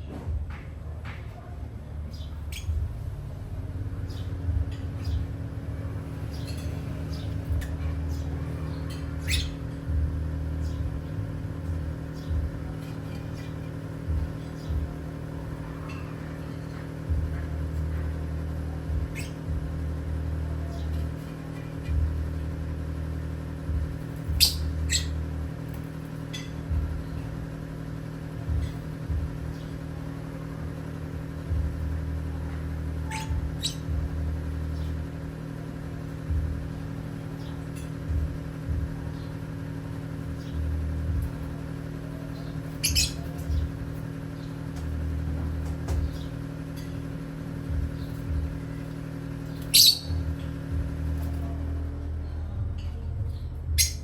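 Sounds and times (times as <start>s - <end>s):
steady low hum: 0.0s - 54.0s
parrots chirping and squawking: 4.0s - 30.9s, 31.5s - 51.8s, 53.3s - 54.0s.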